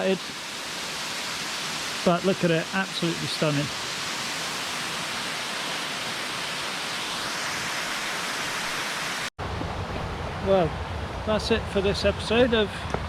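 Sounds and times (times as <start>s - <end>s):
waterfall rushing: 0.0s - 9.3s.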